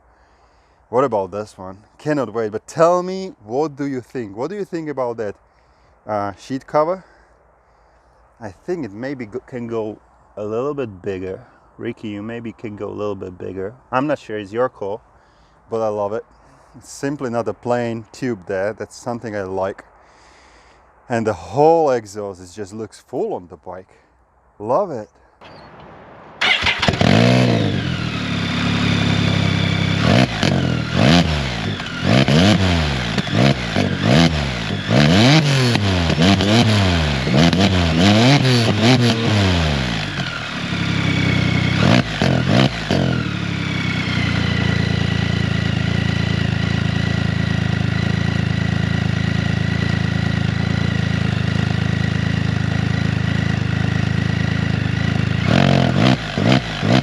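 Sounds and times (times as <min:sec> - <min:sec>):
three-cylinder engine revving: 0:26.4 - 0:57.0.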